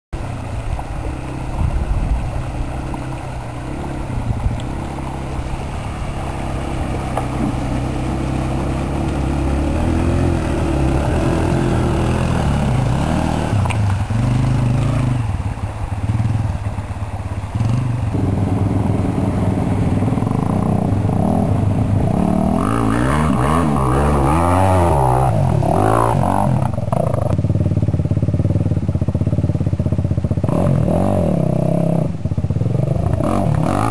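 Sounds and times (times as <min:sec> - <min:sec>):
dirt bike engine revving: 0:04.7 - 0:16.6, 0:17.5 - 0:28.7, 0:30.3 - 0:33.9.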